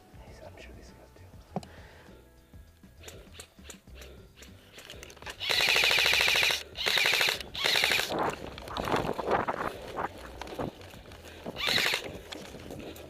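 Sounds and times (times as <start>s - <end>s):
airsoft gun full-auto bursts: 4.7s - 8.2s, 11.6s - 12.1s.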